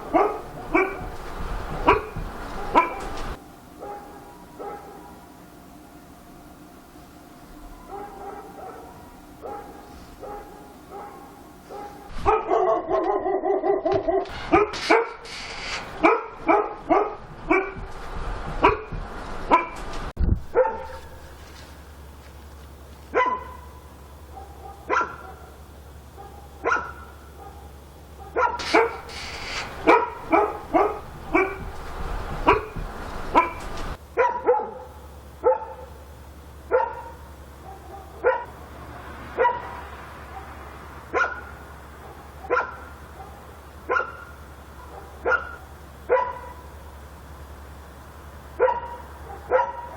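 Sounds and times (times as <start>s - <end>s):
dog drawn-out cry: 0.0s - 5.3s, 7.8s - 17.8s, 23.1s - 25.6s, 26.2s - 35.9s, 39.4s - 46.7s, 48.6s - 49.9s
dog barking: 0.0s - 5.4s, 7.8s - 17.9s, 18.6s - 21.4s, 23.1s - 36.0s, 36.7s - 38.6s, 39.3s - 46.8s, 48.6s - 49.9s.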